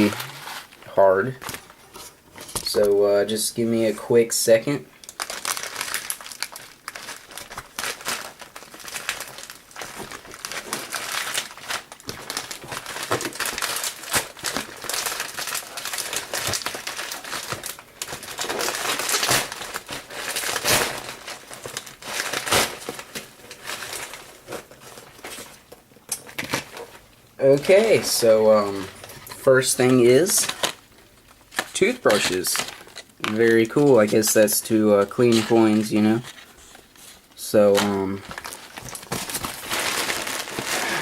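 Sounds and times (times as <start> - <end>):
packaging crinkling and rustling: 0.0 - 3.3, 5.0 - 41.0
packaging tearing: 5.0 - 41.0.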